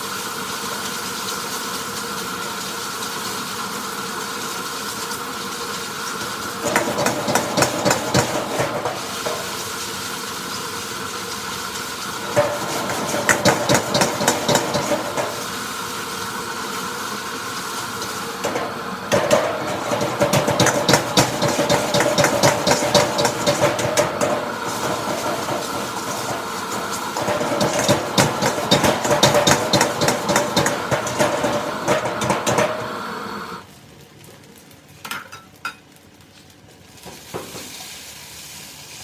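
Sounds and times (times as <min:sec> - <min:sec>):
food sizzling: 0:00.0 - 0:34.7, 0:35.5 - 0:39.0
burner hum: 0:06.1 - 0:10.4, 0:11.7 - 0:33.7
metal spatula scraping a wok: 0:06.2 - 0:09.7, 0:12.2 - 0:15.6, 0:18.4 - 0:33.0.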